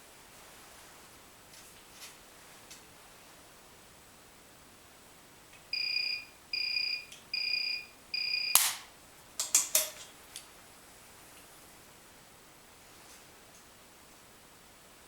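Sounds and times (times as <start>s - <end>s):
short beeps: 5.7s - 8.7s
welder sharp crack: 8.6s - 10.0s.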